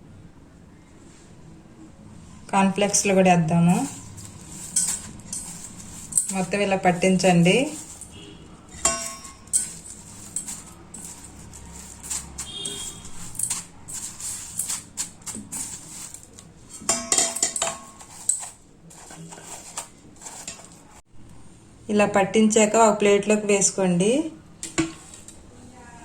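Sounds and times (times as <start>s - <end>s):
cornflakes rustling: 2.9s - 21.0s
dish clinking and tapping: 8.7s - 14.1s, 16.8s - 18.5s.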